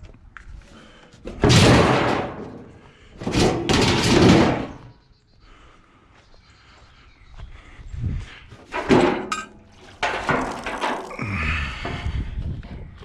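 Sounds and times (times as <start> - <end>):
scrap metal clattering crashes: 1.3 - 4.9, 8.7 - 11.2.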